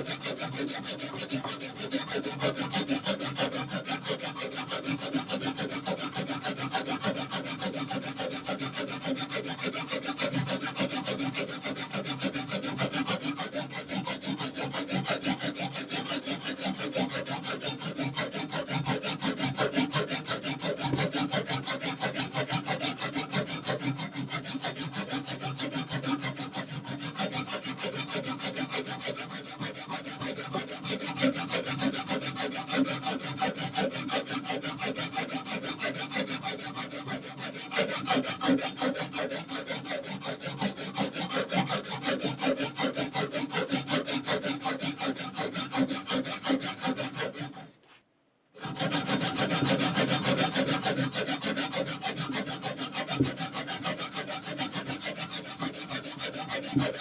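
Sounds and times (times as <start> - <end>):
sharpening stone rasping on knife: 0.0 - 26.0.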